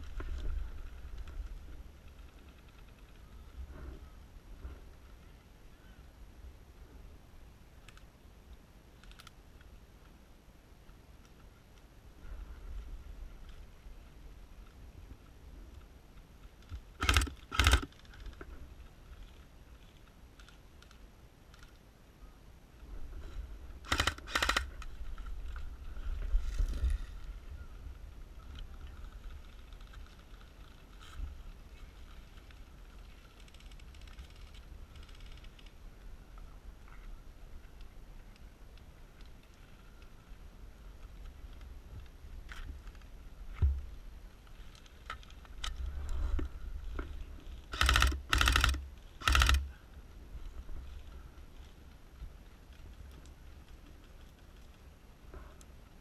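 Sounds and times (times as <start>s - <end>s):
airsoft rifle full-auto bursts: 17.0s - 17.9s, 23.8s - 24.7s, 47.7s - 49.7s.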